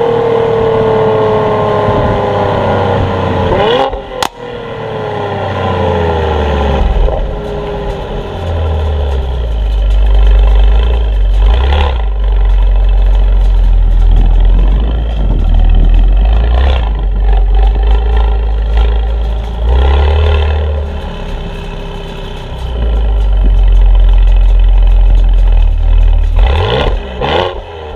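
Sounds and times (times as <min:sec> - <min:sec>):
car exhaust rumbling: 0:00.0 - 0:27.9
exhaust pop: 0:03.9 - 0:04.5, 0:06.8 - 0:27.6.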